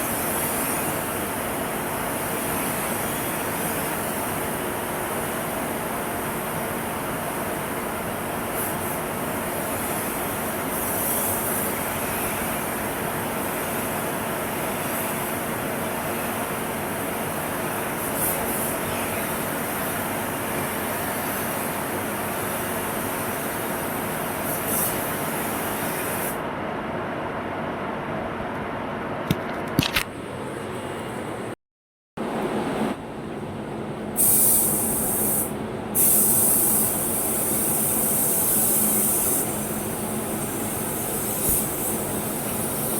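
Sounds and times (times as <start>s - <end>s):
sharp high hiss: 34.2s - 42.9s.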